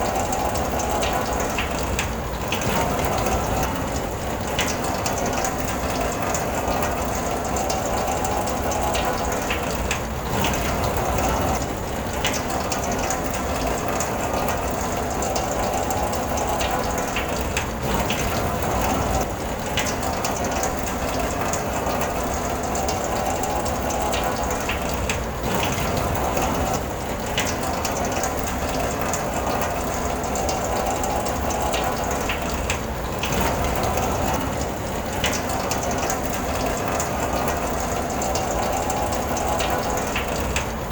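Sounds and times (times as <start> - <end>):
rain on car roof: 0.0 - 40.9.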